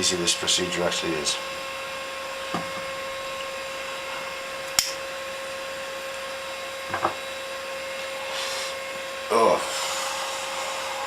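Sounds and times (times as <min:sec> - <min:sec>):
computer fan humming: 0:00.0 - 0:11.0.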